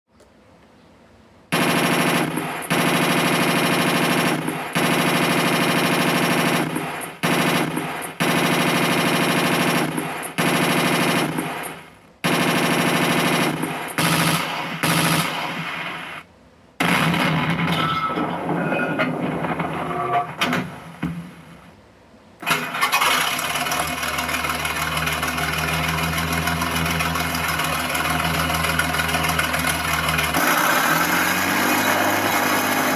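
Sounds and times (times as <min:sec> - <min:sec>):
machine-gun fire bursts: 0:01.5 - 0:16.2, 0:16.8 - 0:17.8, 0:22.4 - 0:32.9.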